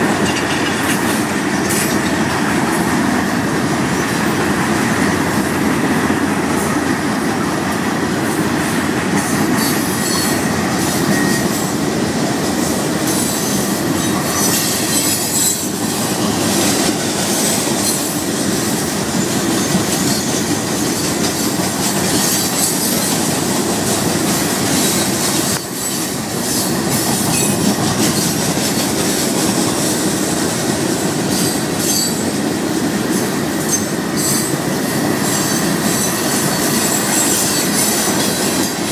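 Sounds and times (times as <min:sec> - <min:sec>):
wheels clattering over rail joints: 0:00.0 - 0:02.8
freight train rolling past: 0:00.0 - 0:38.9
high wheel squeals: 0:09.4 - 0:11.8, 0:13.1 - 0:15.8, 0:31.3 - 0:32.3, 0:33.6 - 0:38.7.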